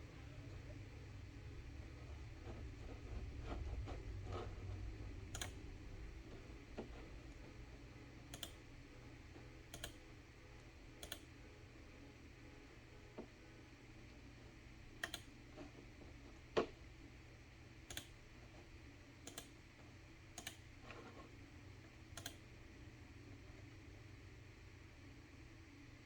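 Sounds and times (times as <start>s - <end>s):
low steady hum: 0.0s - 26.0s
computer keys clicking: 5.2s - 5.6s, 8.3s - 8.6s, 9.7s - 10.0s, 11.0s - 11.3s, 15.0s - 15.4s, 17.8s - 18.2s, 19.2s - 19.6s, 20.3s - 20.7s, 22.1s - 22.4s.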